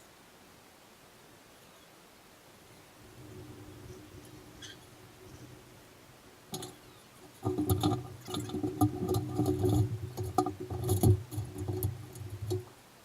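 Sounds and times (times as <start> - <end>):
rattling clicks: 3.1 - 12.7.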